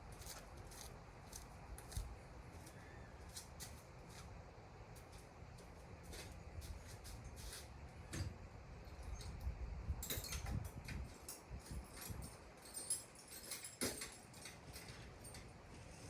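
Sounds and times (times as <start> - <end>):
hand tools clicking and rattling: 10.0 - 15.6.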